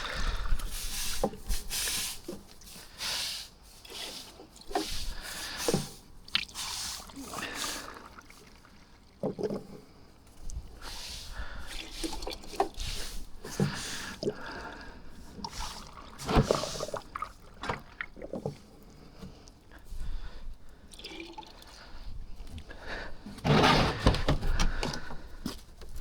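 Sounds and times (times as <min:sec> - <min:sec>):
liquid pouring and dripping: 0:20.9 - 0:22.5
knocks and clatters: 0:23.4 - 0:25.1.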